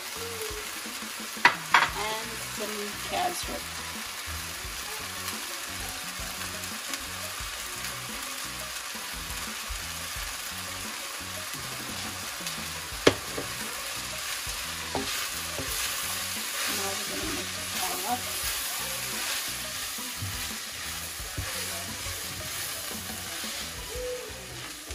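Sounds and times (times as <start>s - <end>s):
food sizzling in a pan: 0.0s - 24.9s
stirring in a pan: 10.5s - 24.9s.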